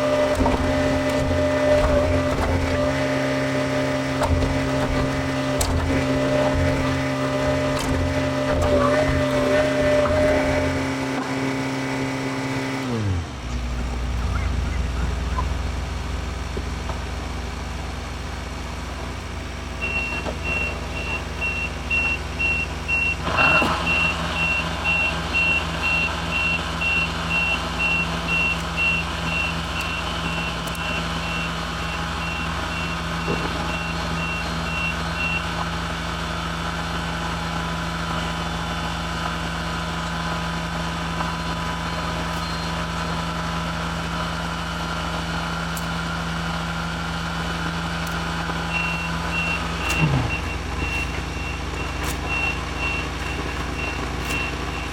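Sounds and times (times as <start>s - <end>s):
diesel engine revving: 0.0s - 54.9s
reverse alarm beeping: 19.8s - 23.2s, 23.8s - 35.6s, 48.7s - 54.9s.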